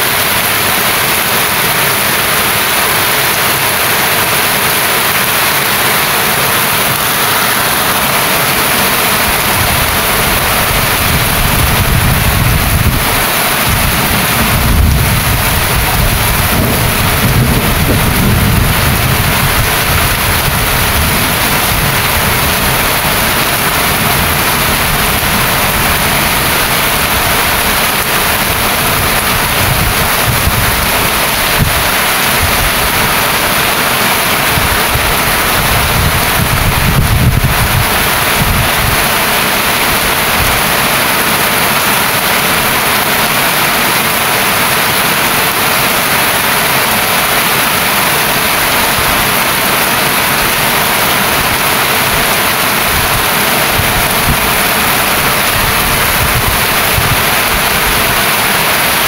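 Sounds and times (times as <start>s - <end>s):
heavy rain hissing: 0.0s - 59.0s.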